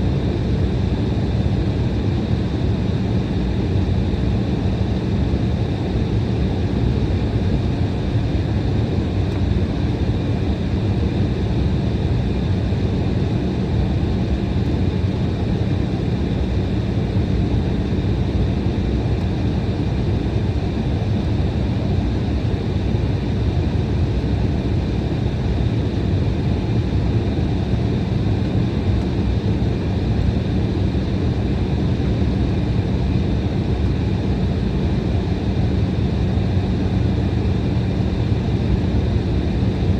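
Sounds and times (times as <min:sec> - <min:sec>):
jet engines in airliner cabin: 0:00.0 - 0:39.9.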